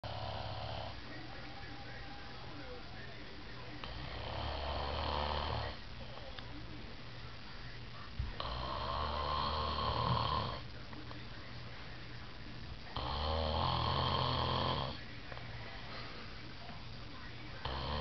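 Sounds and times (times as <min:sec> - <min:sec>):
child snoring loudly: 0:04.1 - 0:05.8, 0:08.4 - 0:10.6, 0:13.0 - 0:15.0
quiet breath: 0:14.9 - 0:18.0.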